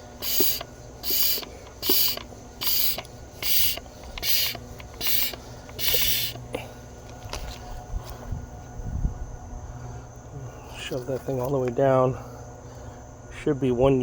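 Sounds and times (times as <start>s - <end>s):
hand pump air hiss: 0.0s - 6.6s.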